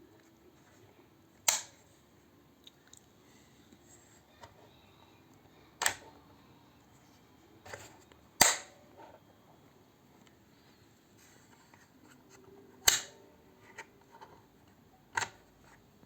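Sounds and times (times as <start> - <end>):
sharp snaps from packaging: 1.4 - 1.8, 12.8 - 13.2.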